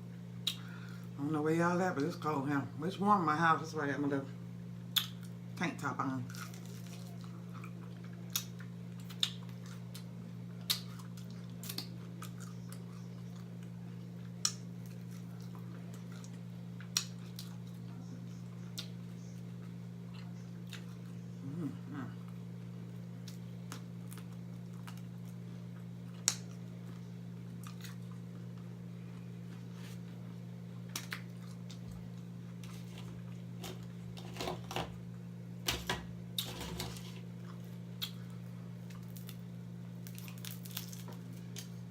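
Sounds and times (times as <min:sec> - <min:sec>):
steady low hum: 0:00.0 - 0:41.9
person chewing with mouth clicks: 0:06.4 - 0:17.6.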